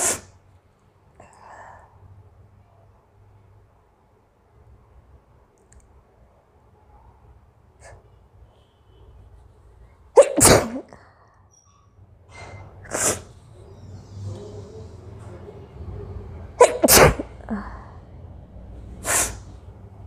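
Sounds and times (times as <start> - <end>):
woman sneezing: 10.2 - 11.0, 16.6 - 17.6, 19.0 - 19.4
breathy rush of air through nose: 18.9 - 19.7.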